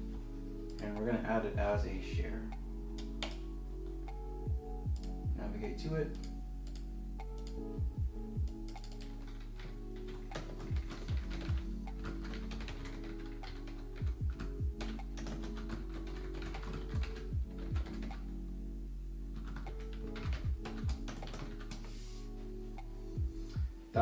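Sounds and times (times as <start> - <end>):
background music with bass thumps: 0.0 - 6.4, 7.2 - 8.9, 9.7 - 15.6, 16.4 - 18.2, 19.6 - 24.0.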